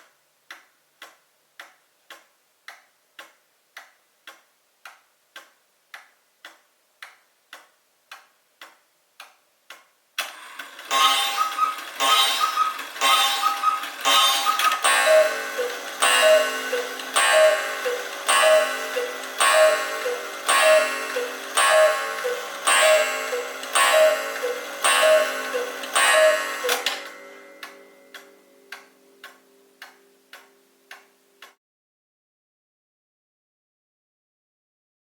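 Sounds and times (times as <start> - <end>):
clock ticking: 0.0 - 31.6
cuckoo clock calls: 10.8 - 31.0.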